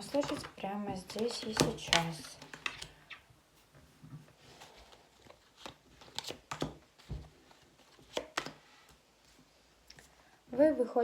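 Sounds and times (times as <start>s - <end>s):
light rustling of cards: 0.0s - 10.2s
cards snapping: 5.6s - 6.8s, 8.0s - 8.6s.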